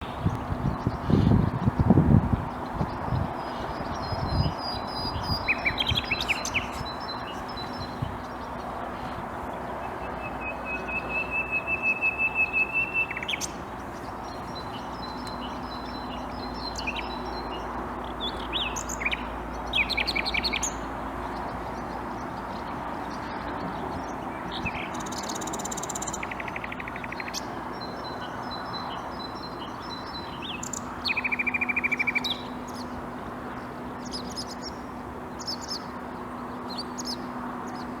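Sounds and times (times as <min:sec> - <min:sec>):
nightingale singing: 0:00.0 - 0:08.7, 0:09.8 - 0:33.0
steady background noise: 0:00.0 - 0:38.0.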